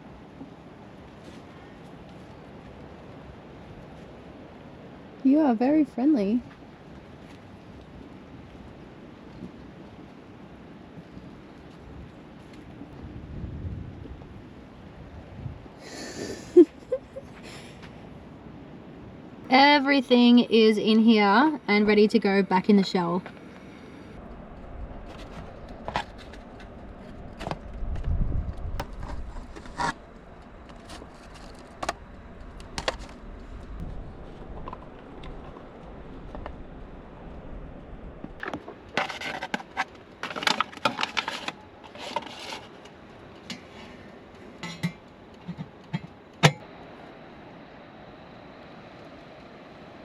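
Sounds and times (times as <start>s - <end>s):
low rumble: 23.8s - 31.2s, 31.8s - 38.4s.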